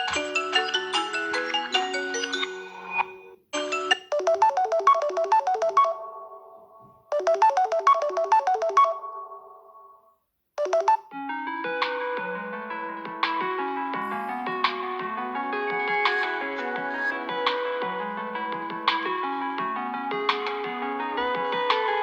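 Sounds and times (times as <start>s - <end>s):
phone ringtone melody: 0.0s - 10.0s, 10.6s - 11.2s
other phone tones: 10.6s - 11.0s.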